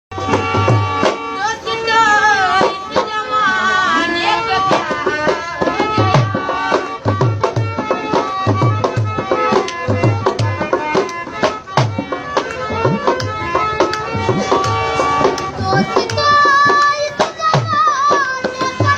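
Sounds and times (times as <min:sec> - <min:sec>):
hand drum strokes: 0:07.2 - 0:18.9
sliding melody: 0:09.2 - 0:18.9
deep bass beat: 0:12.6 - 0:16.6.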